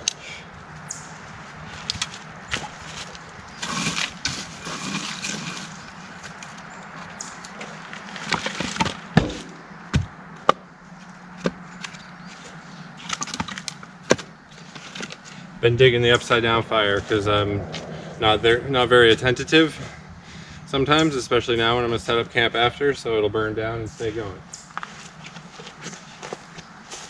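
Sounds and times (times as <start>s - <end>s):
firewood knocks and snaps: 8.3s - 10.6s.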